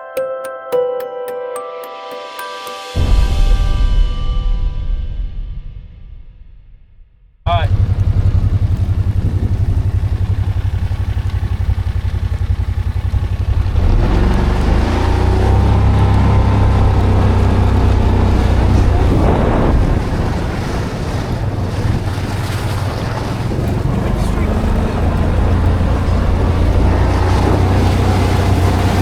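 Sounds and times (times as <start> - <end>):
engine pulsing: 7.5 - 29.0.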